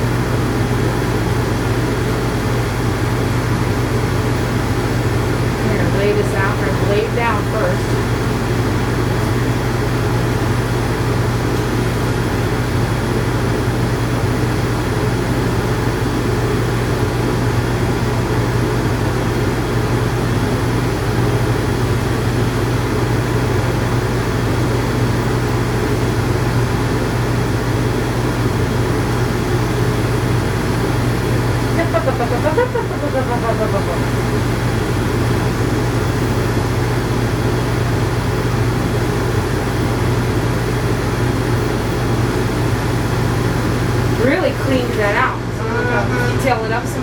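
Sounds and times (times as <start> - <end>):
electric clippers humming: 28.3 - 35.9, 43.2 - 47.0.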